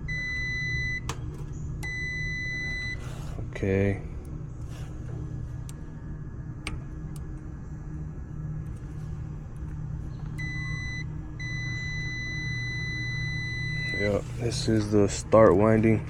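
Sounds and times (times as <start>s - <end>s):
multimeter continuity beep: 0.0s - 1.1s, 1.8s - 3.0s, 10.4s - 14.2s.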